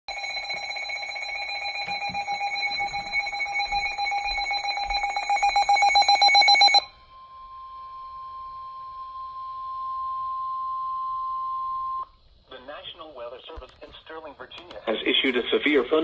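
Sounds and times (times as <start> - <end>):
rapid pulsing alarm beeps: 0.1 - 9.9
steady single alarm tone: 0.1 - 12.0.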